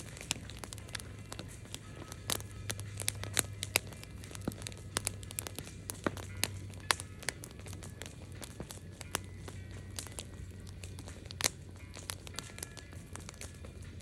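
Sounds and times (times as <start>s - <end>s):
campfire crackling: 0.0s - 14.0s.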